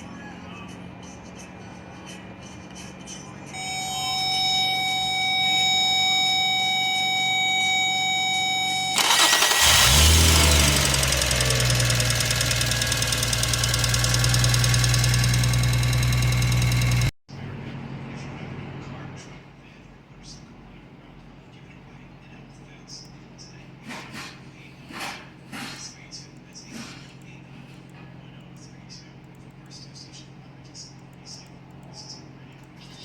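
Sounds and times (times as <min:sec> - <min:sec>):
high electronic tone: 0:03.6 - 0:17.1
car engine cranking and idling: 0:08.5 - 0:17.1.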